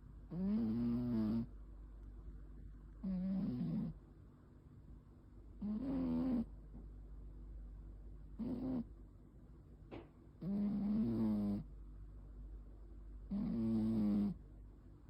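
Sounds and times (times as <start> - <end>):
cat snoring: 0.3 - 1.5, 3.0 - 4.0, 5.6 - 6.5, 8.4 - 8.9, 10.4 - 11.7, 13.3 - 14.4.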